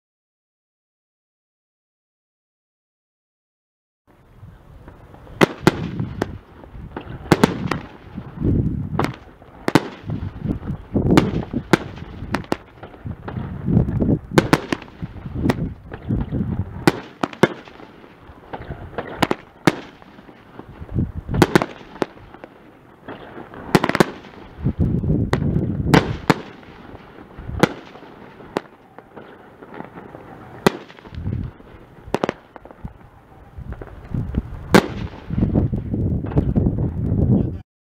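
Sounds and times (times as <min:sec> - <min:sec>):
low booming: 0:04.8 - 0:17.0, 0:20.6 - 0:21.8, 0:23.7 - 0:27.8, 0:33.6 - 0:37.6
firework bangs: 0:04.8 - 0:37.0.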